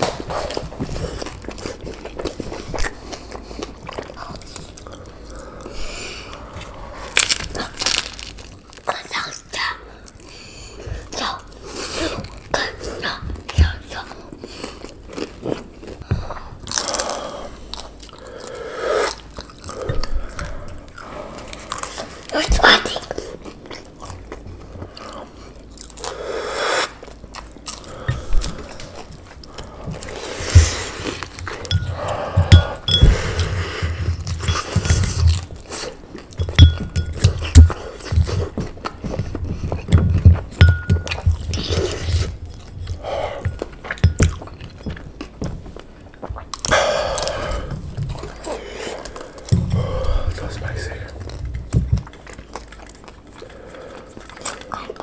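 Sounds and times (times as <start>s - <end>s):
person chewing food: 0.0s - 22.3s, 22.9s - 55.0s
utensils clinking against dishes: 31.4s - 35.4s, 36.3s - 38.2s, 40.0s - 45.0s.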